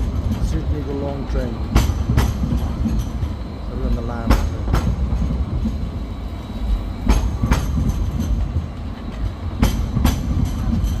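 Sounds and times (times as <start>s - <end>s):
train rumbling on rails: 0.0s - 11.0s
wheels clacking over rail joints: 0.0s - 11.0s.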